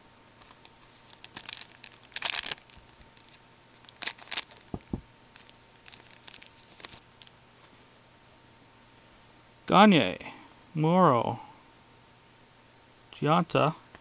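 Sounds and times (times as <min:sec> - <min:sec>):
cards rustling: 0:00.4 - 0:07.3
wrapper crinkling and tearing: 0:00.4 - 0:07.3.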